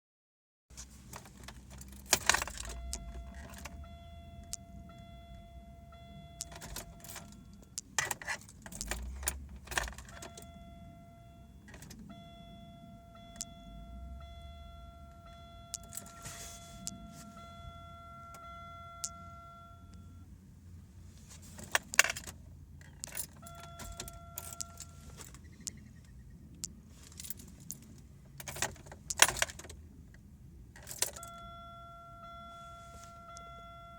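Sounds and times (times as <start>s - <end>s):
key ring jangling and clicking: 1.2s - 3.8s, 6.4s - 10.5s, 21.6s - 25.4s, 27.0s - 29.8s, 30.8s - 31.4s
electronic chime tone: 10.3s - 20.2s, 31.2s - 33.9s.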